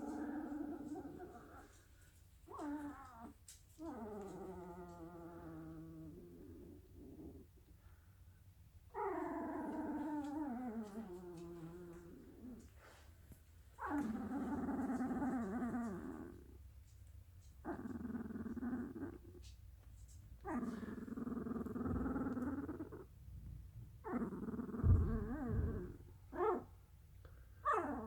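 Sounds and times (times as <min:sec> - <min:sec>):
puppy grumbling whines: 0:00.0 - 0:01.8, 0:02.5 - 0:07.5, 0:08.9 - 0:12.7, 0:13.8 - 0:16.6, 0:17.6 - 0:19.4, 0:20.4 - 0:23.1, 0:24.0 - 0:26.7, 0:27.6 - 0:28.0.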